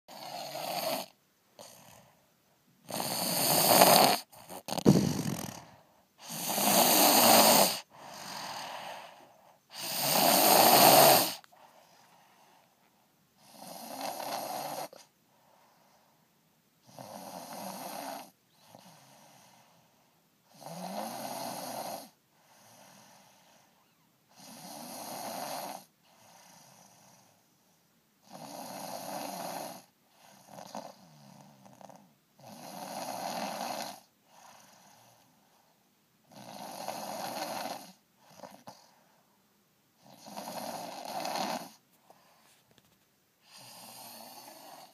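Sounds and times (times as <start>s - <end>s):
person snoring: 0.1s - 2.0s, 2.8s - 11.5s, 13.4s - 15.1s, 16.8s - 19.4s, 20.5s - 23.2s, 28.2s - 34.9s, 36.3s - 38.9s, 40.0s - 41.8s, 43.4s - 44.9s.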